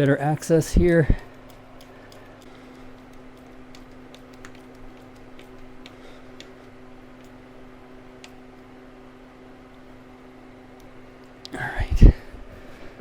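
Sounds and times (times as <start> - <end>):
steady low hum: 0.0 - 13.0
faint clicks and taps of hand work: 1.2 - 7.4.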